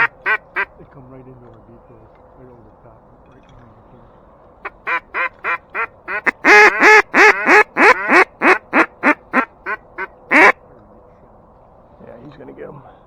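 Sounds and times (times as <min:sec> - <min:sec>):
duck call quacks: 0:00.0 - 0:00.7, 0:04.6 - 0:10.6.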